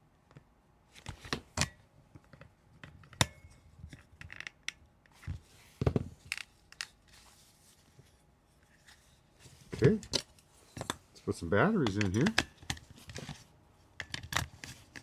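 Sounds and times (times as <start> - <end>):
plastic parts clicking and scraping: 11.8 - 15.0.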